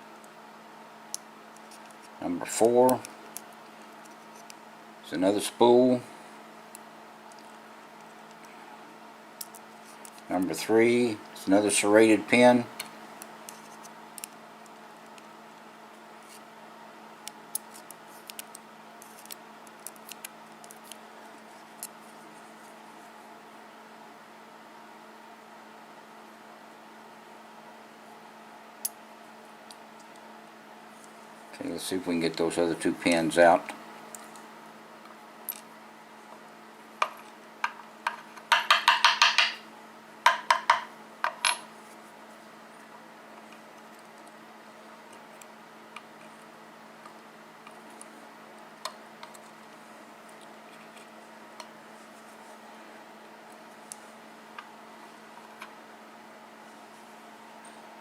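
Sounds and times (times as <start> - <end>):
low steady hum: 0.0 - 58.0
small metal taps and clicks: 37.0 - 39.6.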